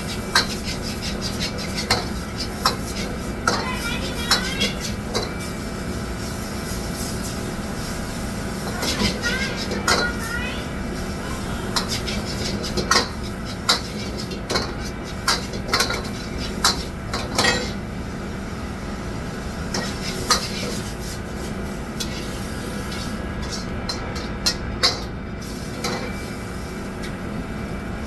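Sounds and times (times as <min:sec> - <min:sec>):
low background hum: 0:00.0 - 0:28.0
metal utensils clinking on pans: 0:00.3 - 0:05.4, 0:08.7 - 0:10.2, 0:11.7 - 0:17.8, 0:22.9 - 0:25.1.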